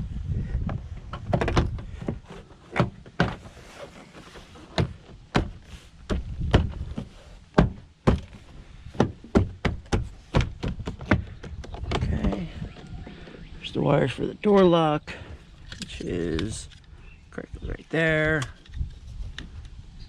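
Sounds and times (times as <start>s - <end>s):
knocks clicks and thunks on door panel: 4.7s - 12.8s.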